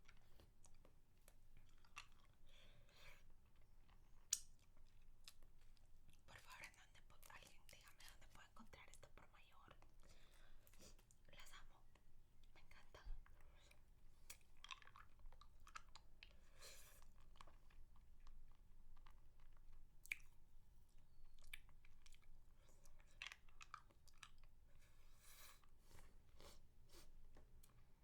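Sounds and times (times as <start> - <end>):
wet mouth clicks and smacks: 4.2 - 5.4, 19.0 - 20.4.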